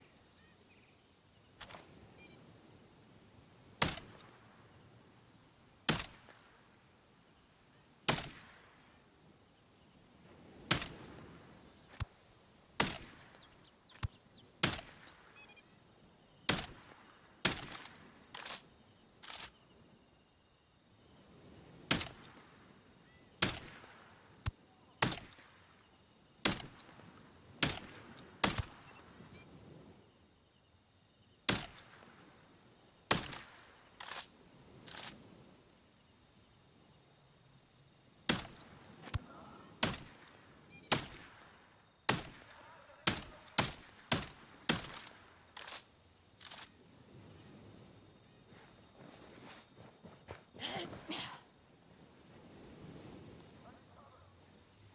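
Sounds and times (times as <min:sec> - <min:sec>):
shotgun shots echoing: 0:03.8 - 0:04.5, 0:08.1 - 0:08.7, 0:10.7 - 0:11.3, 0:12.8 - 0:15.3, 0:16.4 - 0:18.6, 0:21.9 - 0:22.6, 0:23.4 - 0:25.8, 0:26.4 - 0:29.2, 0:31.5 - 0:32.4, 0:33.1 - 0:35.2, 0:38.3 - 0:46.7.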